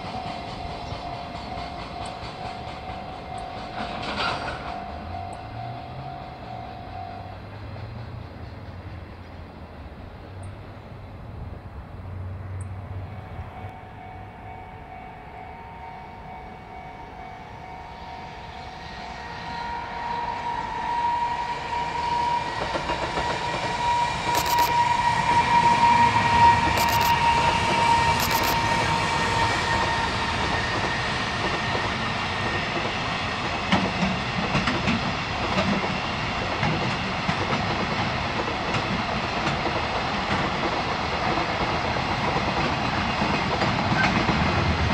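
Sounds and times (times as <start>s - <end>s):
wheels clattering over rails: 0.0s - 5.2s
train passing: 0.0s - 44.9s
sharp clicks: 24.3s - 24.7s, 26.8s - 27.2s, 28.2s - 28.6s.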